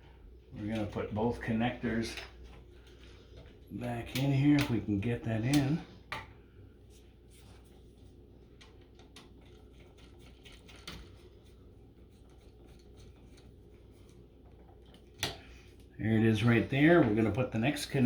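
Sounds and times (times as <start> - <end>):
wires clicking and scraping in metal box: 7.3 - 15.4.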